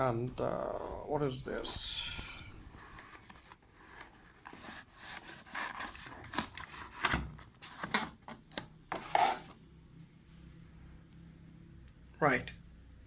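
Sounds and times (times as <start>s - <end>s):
packaging rustling and crinkling: 2.6s - 8.3s.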